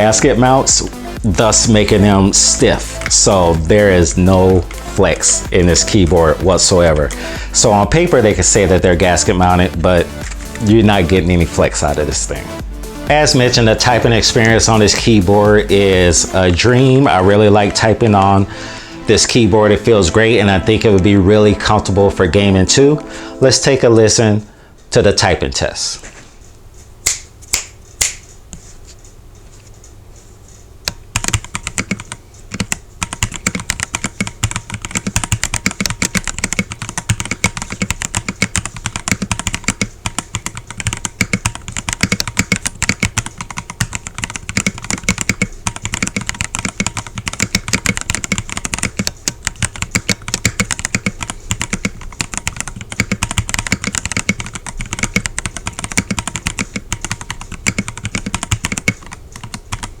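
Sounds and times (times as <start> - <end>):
mechanical keyboard typing: 0.0 - 16.9, 30.9 - 60.0.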